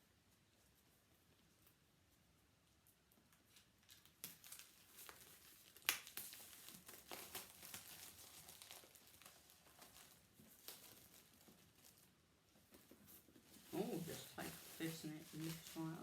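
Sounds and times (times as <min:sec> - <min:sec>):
paper packaging crinkling and tearing: 0:03.4 - 0:12.2, 0:13.4 - 0:16.0
sharp snaps: 0:05.8 - 0:06.3.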